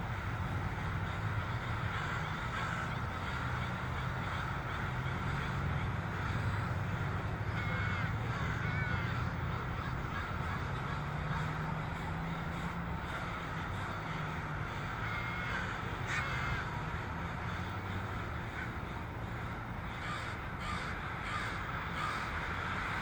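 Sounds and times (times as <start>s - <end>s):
crows cawing: 0.0s - 23.0s.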